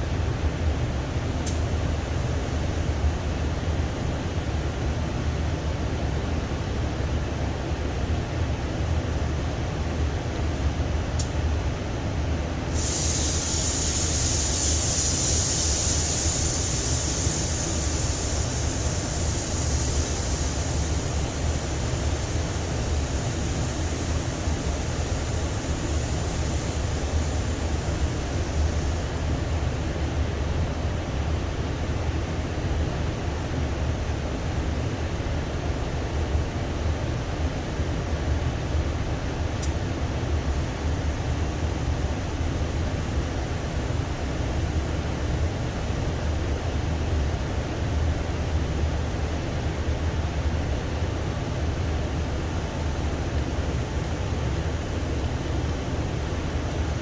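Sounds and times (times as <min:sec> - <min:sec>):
spray gun hissing: 0:12.7 - 0:29.8.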